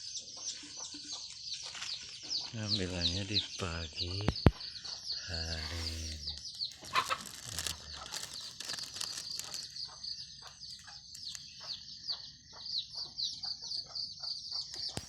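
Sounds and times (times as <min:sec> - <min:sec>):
small birds twittering: 0:00.0 - 0:15.0
short scratchy sounds: 0:05.5 - 0:08.0.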